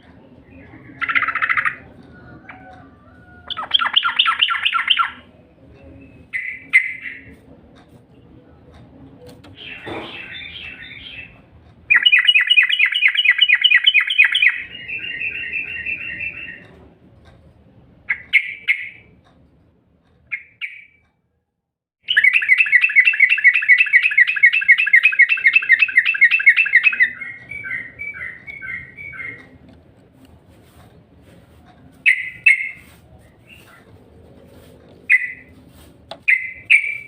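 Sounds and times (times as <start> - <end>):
bird trilling song: 0.4 - 1.9, 3.5 - 7.4, 9.5 - 16.8, 18.1 - 19.2, 20.3 - 21.1, 22.0 - 29.6, 32.0 - 33.8, 35.0 - 35.6, 36.2 - 37.0
bird chirps: 3.5 - 7.4, 9.5 - 16.8, 18.1 - 19.2, 20.3 - 21.1, 22.0 - 29.6, 32.0 - 33.8, 35.0 - 35.6, 36.2 - 37.0.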